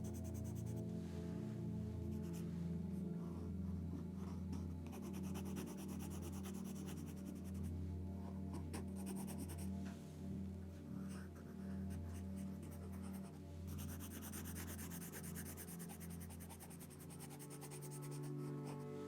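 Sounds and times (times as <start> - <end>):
low background drone: 0.0 - 15.0
pencil sketching on paper: 4.2 - 7.6, 8.5 - 9.7, 11.1 - 18.8.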